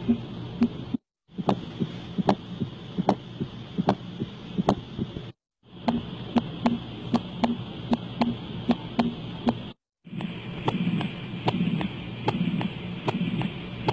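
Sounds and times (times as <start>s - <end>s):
heartbeat clicks: 0.1s - 5.3s, 5.9s - 13.9s
low heart thuds: 0.6s - 5.3s.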